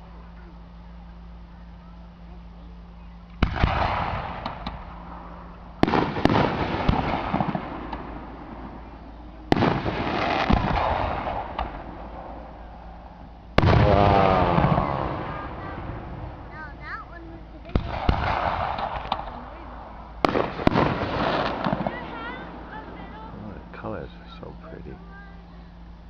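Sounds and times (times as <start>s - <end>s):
fireworks bursting with rumbling echo: 3.2s - 26.0s
fireworks crackling: 3.4s - 25.8s.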